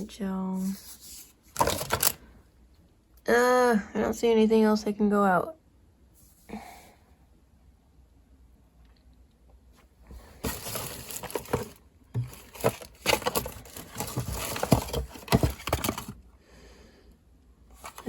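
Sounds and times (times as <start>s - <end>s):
plastic bottles clattering and rustling: 1.5s - 2.2s, 10.1s - 16.2s, 17.7s - 18.0s.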